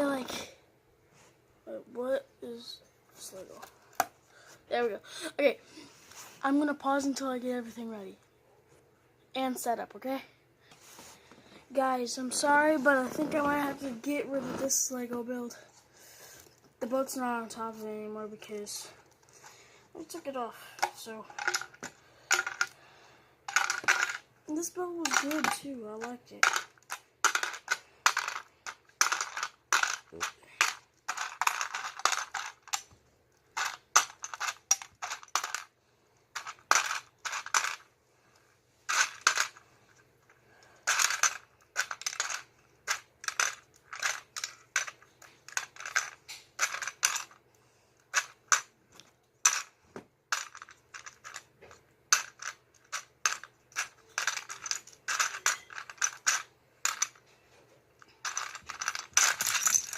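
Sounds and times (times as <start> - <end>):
plastic bricks clicking and clattering: 20.8 - 22.8, 23.5 - 24.2, 25.0 - 33.0, 33.6 - 35.7, 36.4 - 37.8, 38.9 - 39.6, 40.8 - 47.4, 50.3 - 51.5, 52.1 - 57.2, 58.2 - 59.9.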